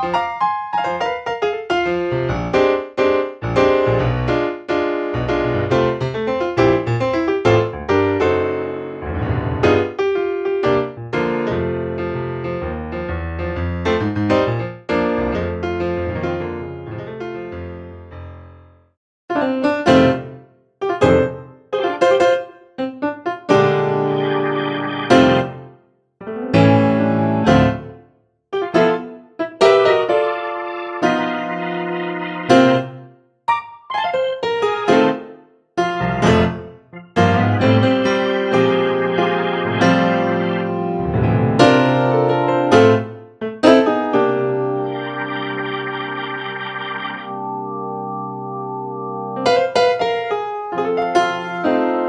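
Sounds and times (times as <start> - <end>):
piano notes and chords: 0.0 - 52.0.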